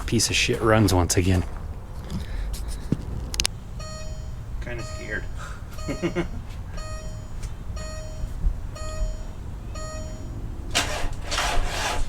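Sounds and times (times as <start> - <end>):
car warning chime beeping: 3.3 - 11.0.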